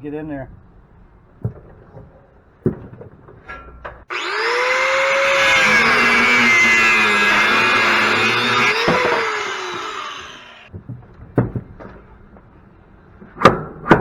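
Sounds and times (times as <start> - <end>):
power tool cutting metal: 4.1 - 10.7.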